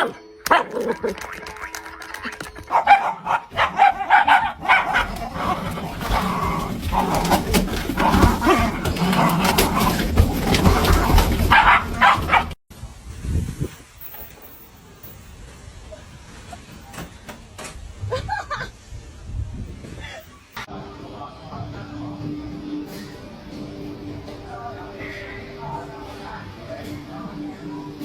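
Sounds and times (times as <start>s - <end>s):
dog barking: 2.6s - 6.2s, 11.4s - 12.6s.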